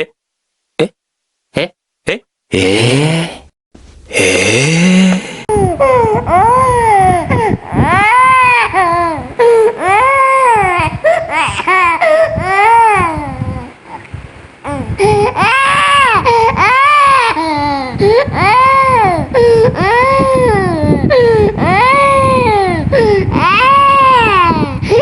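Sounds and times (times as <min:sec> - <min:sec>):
young child crying: 0:05.5 - 0:13.8, 0:14.7 - 0:25.0.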